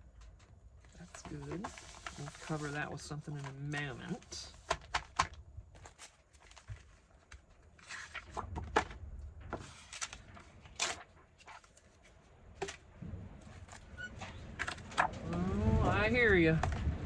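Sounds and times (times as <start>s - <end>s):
paper and card rustling and tapping: 0.1s - 12.8s, 13.5s - 15.5s.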